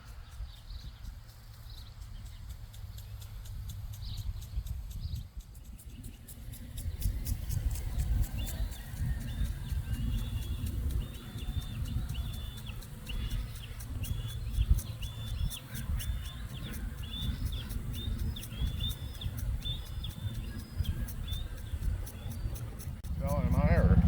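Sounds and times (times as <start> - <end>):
small bird chirping: 0.0 - 24.0
low rumble: 22.8 - 24.0.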